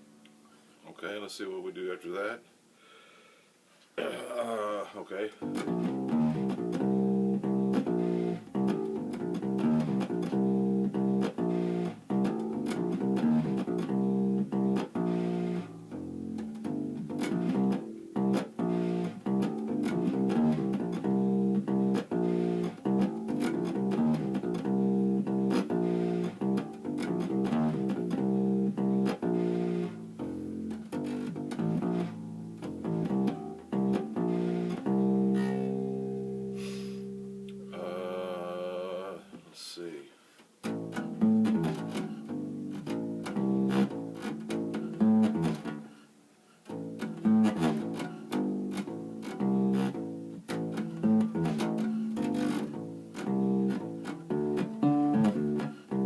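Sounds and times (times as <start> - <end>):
acoustic bass guitar plucked notes: 5.4 - 39.2, 40.6 - 45.9, 46.7 - 56.0.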